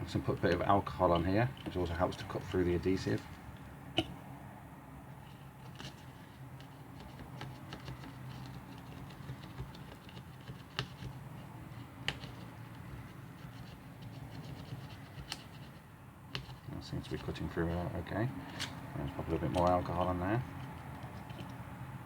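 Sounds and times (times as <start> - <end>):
plastic card scraping: 5.4 - 15.8, 16.4 - 21.7.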